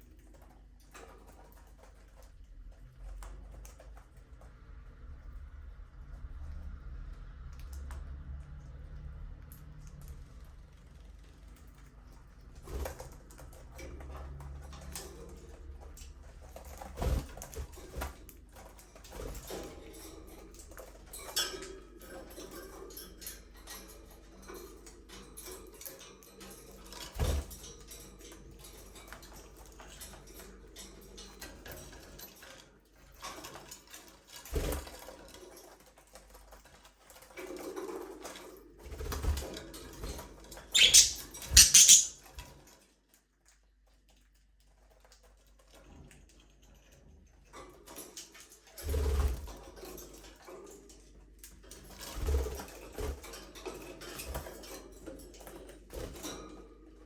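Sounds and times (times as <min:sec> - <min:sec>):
budgerigars chirping: 0:40.7 - 0:42.2.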